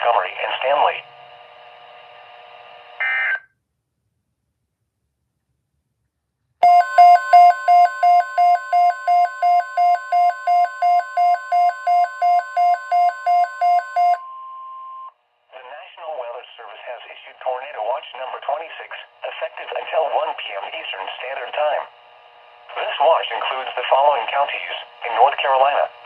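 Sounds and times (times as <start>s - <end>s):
faint radio hiss: 0.0s - 3.3s, 15.2s - 26.0s
alert alarm beeping rapidly: 6.6s - 14.5s
steady alarm tone: 6.6s - 15.1s.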